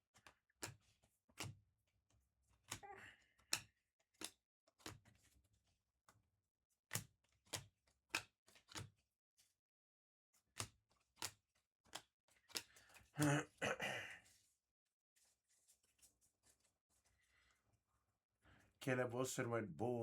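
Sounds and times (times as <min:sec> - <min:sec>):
trading cards clicking as flipped: 0:03.5 - 0:05.4, 0:06.9 - 0:08.9, 0:10.6 - 0:13.2.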